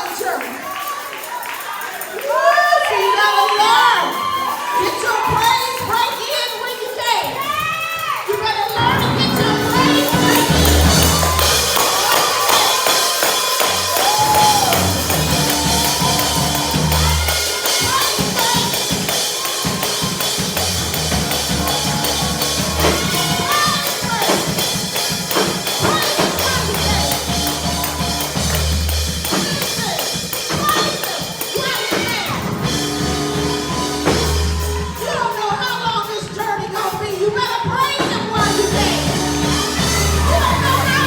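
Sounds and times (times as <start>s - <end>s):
church band playing gospel music: 0.0s - 41.0s
drum kit fast beat: 3.8s - 41.0s
voices calling out: 7.3s - 35.8s, 38.0s - 41.0s
held bass notes: 8.8s - 11.9s, 13.6s - 29.3s, 32.4s - 35.2s, 38.4s - 41.0s.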